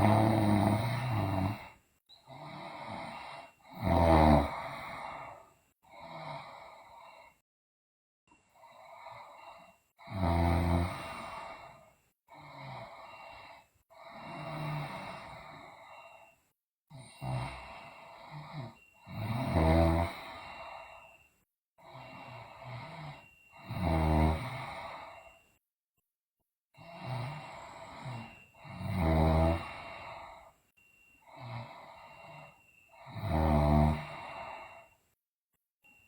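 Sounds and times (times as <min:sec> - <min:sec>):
girl snoring loudly: 0:00.0 - 0:01.7, 0:02.3 - 0:06.8, 0:10.0 - 0:11.8, 0:14.0 - 0:15.8, 0:17.0 - 0:20.8, 0:21.8 - 0:25.2, 0:26.8 - 0:30.4, 0:31.2 - 0:34.8
soft breathing: 0:08.5 - 0:09.9, 0:11.0 - 0:19.2, 0:20.1 - 0:23.7, 0:24.4 - 0:25.6, 0:29.6 - 0:33.2, 0:33.9 - 0:35.2.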